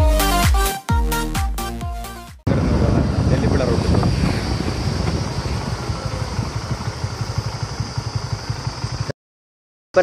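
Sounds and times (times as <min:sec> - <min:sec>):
motorcycle engine running: 0:02.5 - 0:09.2.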